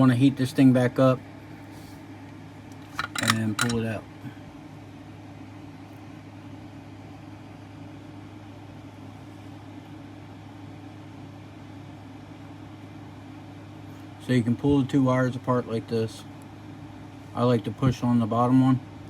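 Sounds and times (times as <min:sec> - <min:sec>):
low machine hum: 0:00.0 - 0:19.0.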